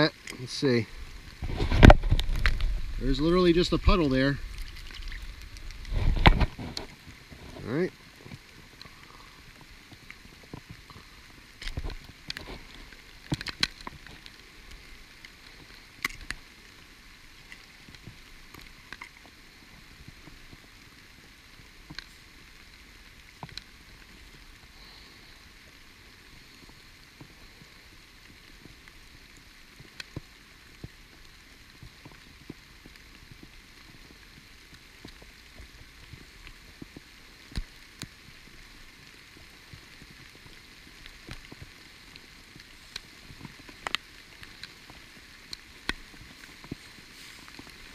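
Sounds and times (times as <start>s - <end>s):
heavy rain falling: 0.0s - 47.9s.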